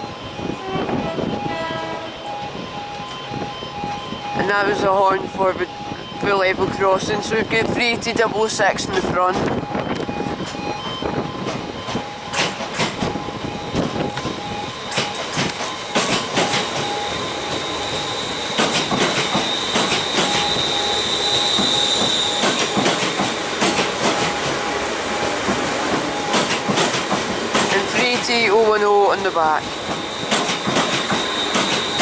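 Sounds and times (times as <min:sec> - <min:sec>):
train wheels clicking over rail joints: 0:09.3 - 0:32.0
high steady squeal: 0:13.0 - 0:25.4, 0:27.8 - 0:32.0.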